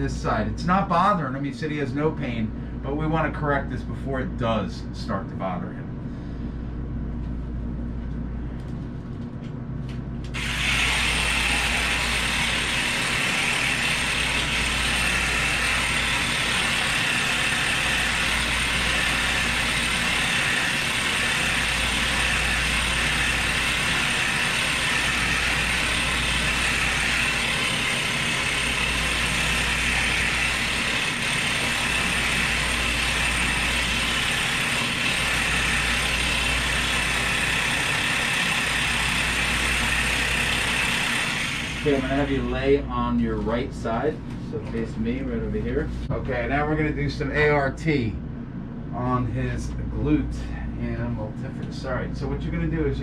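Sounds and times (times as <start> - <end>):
motorised device running: 10.3 - 42.5.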